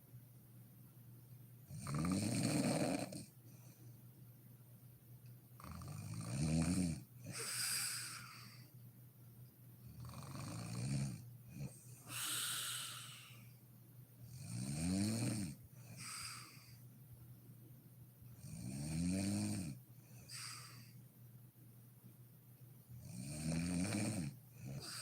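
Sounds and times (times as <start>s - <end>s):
woman snoring: 1.7s - 3.3s, 5.6s - 8.6s, 9.9s - 11.2s, 12.0s - 13.5s, 14.3s - 16.6s, 18.4s - 19.8s, 23.0s - 25.0s
breathy hissing exhale: 7.3s - 8.7s, 12.0s - 13.6s, 15.9s - 16.8s, 20.2s - 21.0s, 24.7s - 25.0s.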